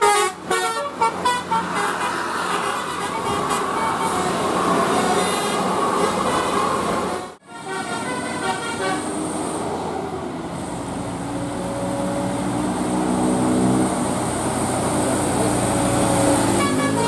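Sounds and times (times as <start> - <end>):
multi-trumpet air horn: 0.0 - 6.6, 7.4 - 9.2, 16.4 - 17.0
bus engine and road noise: 0.0 - 17.0.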